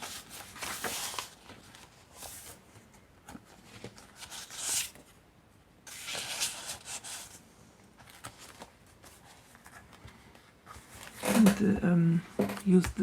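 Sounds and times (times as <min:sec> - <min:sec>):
paper pages rustling: 0:00.0 - 0:05.1, 0:05.9 - 0:07.4, 0:08.0 - 0:11.7.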